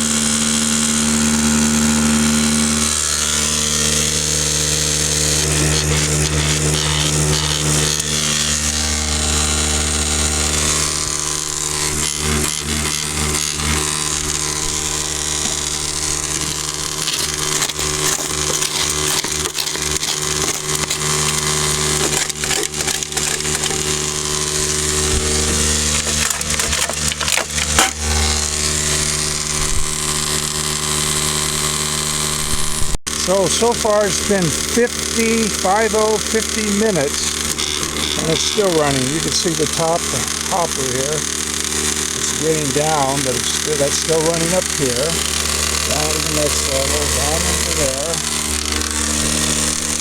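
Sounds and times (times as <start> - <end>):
motor hum: 0.0 - 50.0
dry dirt hissing and rattling: 13.2 - 28.8
knocks and scrapes: 14.6 - 28.5.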